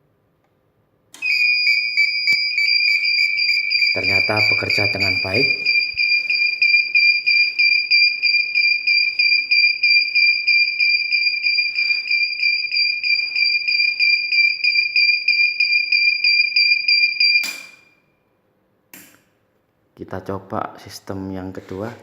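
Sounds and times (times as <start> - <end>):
high-pitched alarm beeping: 1.2 - 18.0.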